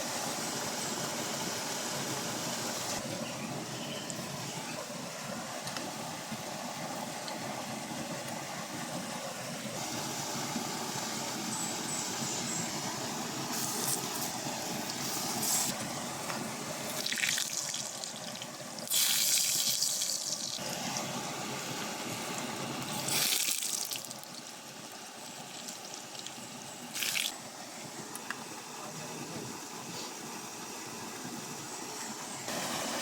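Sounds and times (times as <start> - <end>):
water splashing and pouring: 16.8 - 20.8, 22.9 - 27.4.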